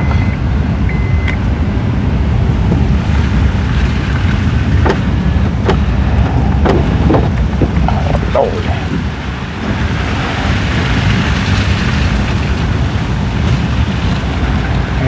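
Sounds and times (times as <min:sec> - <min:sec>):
vehicle rumble: 0:00.0 - 0:15.0
wind buffeting microphone: 0:00.0 - 0:15.0
sharp knocks: 0:04.4 - 0:09.0.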